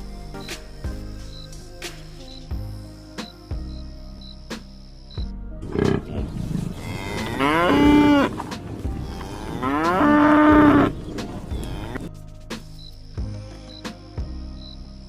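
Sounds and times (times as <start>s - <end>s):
cow mooing: 5.6s - 8.4s, 9.0s - 12.0s.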